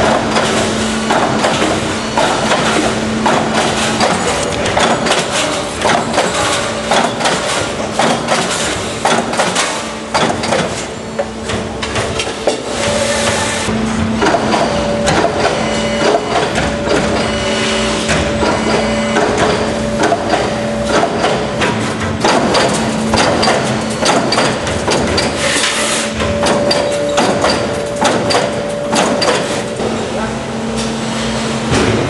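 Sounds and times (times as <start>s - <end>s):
steady machine hum: 0.0s - 32.0s.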